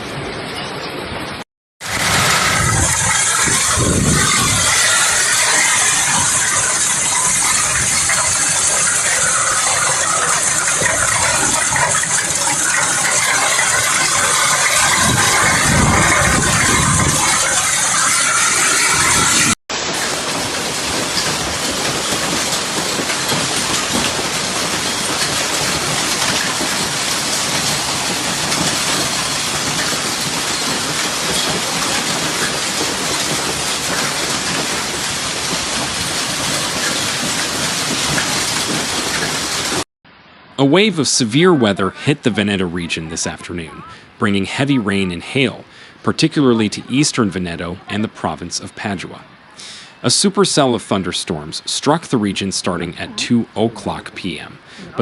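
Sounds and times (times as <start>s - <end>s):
hail clattering: 0.0s - 39.8s, 40.8s - 55.0s
heavy rain hissing: 0.0s - 55.0s
low rumbles: 1.8s - 19.6s.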